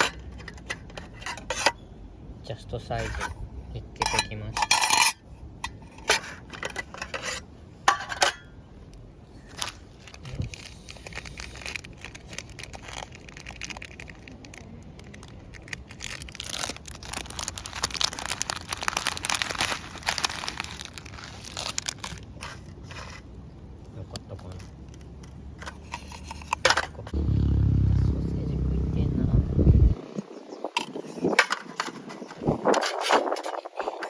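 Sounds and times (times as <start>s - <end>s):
crinkling and rustling: 9.3s - 27.2s.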